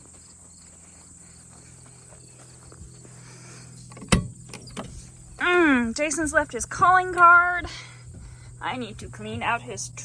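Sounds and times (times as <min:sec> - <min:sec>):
insects chirping: 0:00.0 - 0:10.0
low steady hum: 0:00.0 - 0:10.0.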